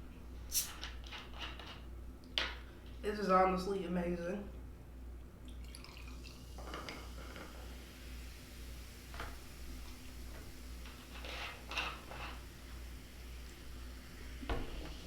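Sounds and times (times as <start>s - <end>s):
low steady hum: 1.8s - 15.0s.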